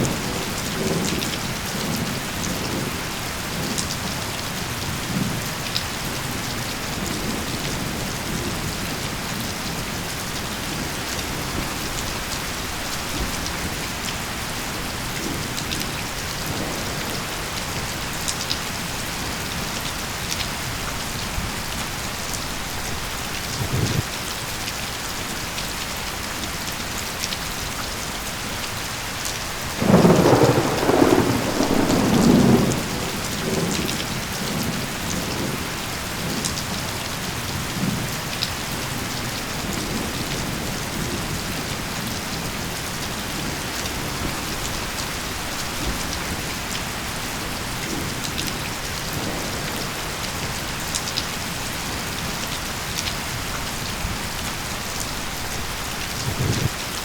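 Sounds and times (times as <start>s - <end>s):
steady rain falling: 0.0s - 57.0s
thunder rumbling: 22.6s - 24.1s, 29.8s - 36.4s, 55.3s - 56.9s.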